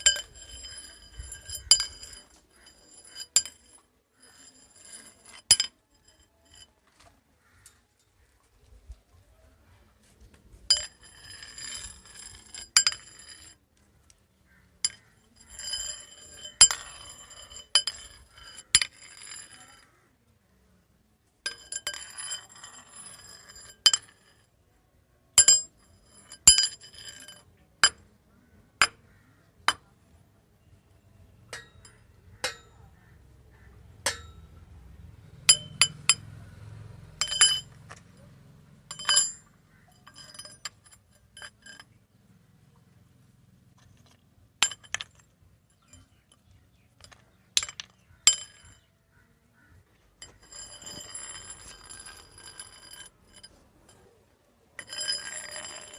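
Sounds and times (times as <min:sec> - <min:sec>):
metal rods clinking: 0:00.0 - 0:08.2, 0:10.7 - 0:14.2, 0:14.8 - 0:20.0, 0:21.5 - 0:24.2, 0:25.4 - 0:28.0, 0:31.4 - 0:34.7, 0:35.3 - 0:42.2, 0:43.7 - 0:48.9, 0:49.7 - 0:55.9.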